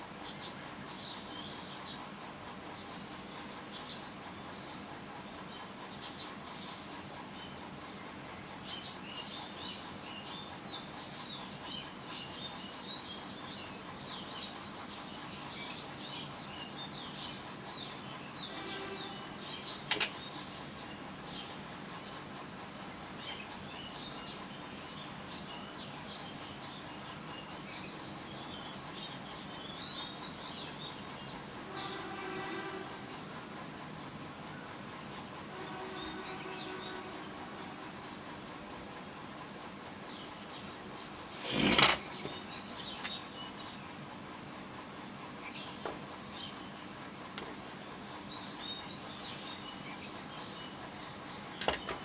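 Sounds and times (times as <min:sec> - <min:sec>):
small birds chirping: 0:23.1 - 0:32.0, 0:34.4 - 0:44.0, 0:45.3 - 0:52.0.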